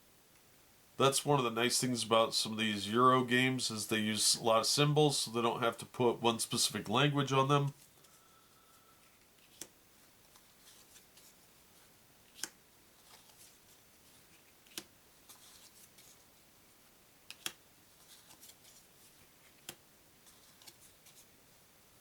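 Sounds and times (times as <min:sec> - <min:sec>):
papery rustling of cards: 0:09.0 - 0:16.4, 0:17.3 - 0:21.4.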